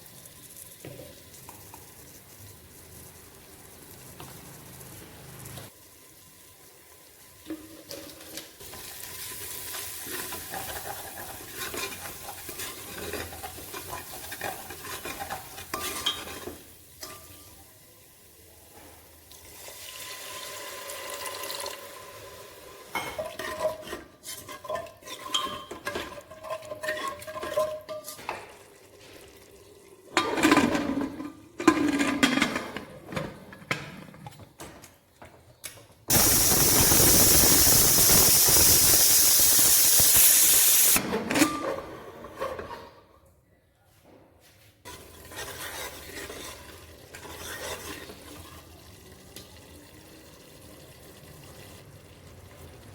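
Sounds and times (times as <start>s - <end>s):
oil sizzling: 0.0s - 17.2s, 36.1s - 41.0s
spoon scraping metal pot: 10.0s - 17.2s, 23.0s - 28.3s, 44.9s - 48.5s
spoon clinking against pot: 24.4s - 28.2s.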